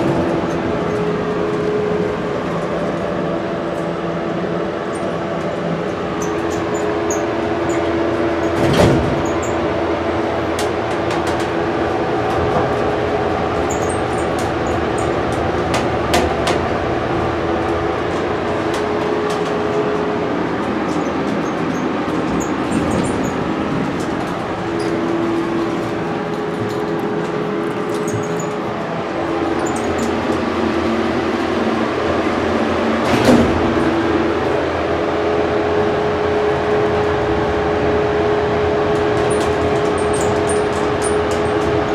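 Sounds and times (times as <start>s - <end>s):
elevator travel rumble: 0.0s - 41.9s
ventilation fan droning: 0.0s - 41.9s.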